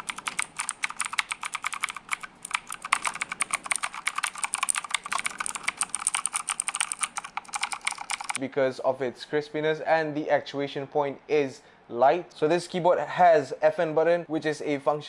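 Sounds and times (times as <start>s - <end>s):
mechanical keyboard typing: 0.0s - 8.4s.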